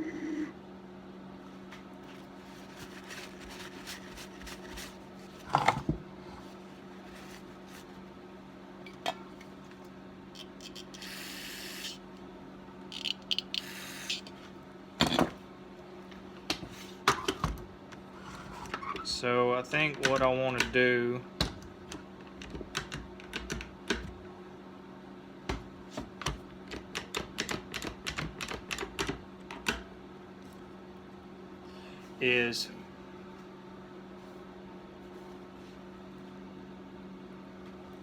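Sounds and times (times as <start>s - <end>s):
low electrical hum: 0.0s - 38.0s
tools clicking and knocking: 13.0s - 14.2s.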